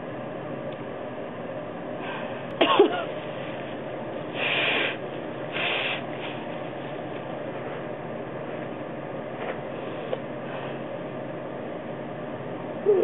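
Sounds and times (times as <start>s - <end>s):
person coughing: 2.6s - 3.1s
short breathy bursts: 4.4s - 6.4s.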